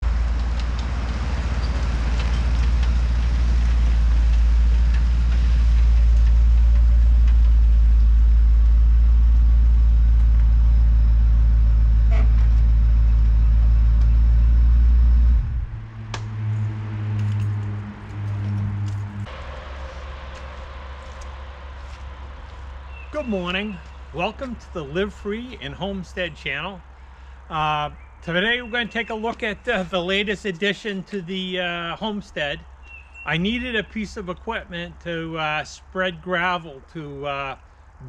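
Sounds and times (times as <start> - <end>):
vehicle engine rumbling: 0.0 - 38.0
steady hum: 5.8 - 17.1.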